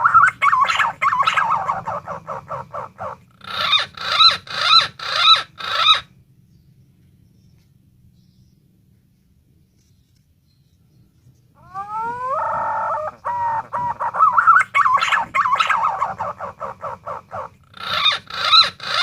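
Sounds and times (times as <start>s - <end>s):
pigeon calling with whistled notes: 0.0s - 6.1s, 11.6s - 19.0s.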